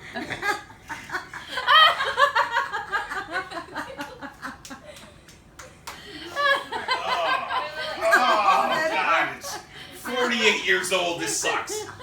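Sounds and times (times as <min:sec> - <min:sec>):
laughter in bursts: 0:00.0 - 0:05.1, 0:06.2 - 0:09.6.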